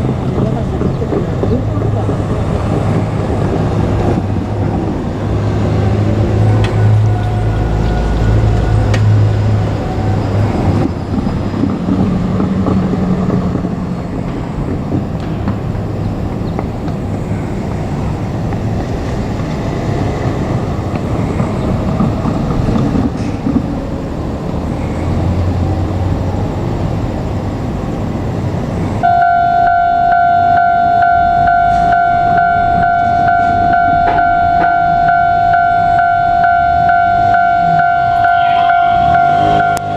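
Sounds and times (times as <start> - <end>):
low motor hum: 0.0 - 39.9
wheels rumbling on rails: 0.0 - 39.9
high held tone: 29.0 - 39.9.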